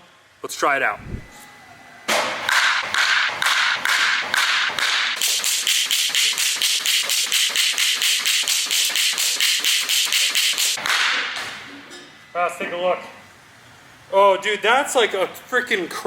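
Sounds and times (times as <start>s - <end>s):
bat cracking against baseballs: 2.1s - 11.7s.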